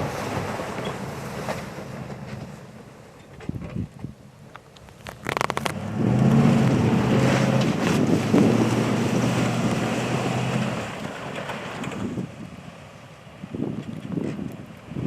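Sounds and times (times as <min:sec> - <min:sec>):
pickup engine running under load: 0:05.3 - 0:15.0.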